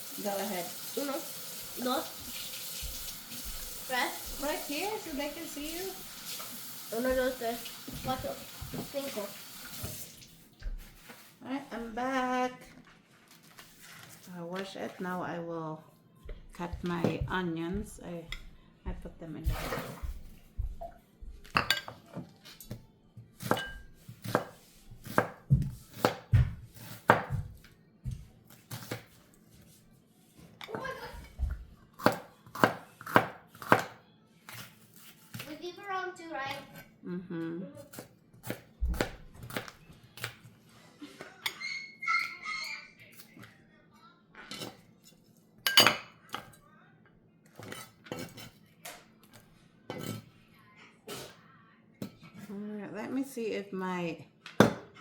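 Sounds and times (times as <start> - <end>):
dishes and utensils clinking: 19.5 - 22.8, 23.4 - 24.5, 41.2 - 42.6, 44.4 - 46.6, 47.5 - 49.0, 49.9 - 50.4
knife chopping on a board: 23.4 - 29.2, 32.0 - 35.5, 37.9 - 40.4, 54.6 - 54.9.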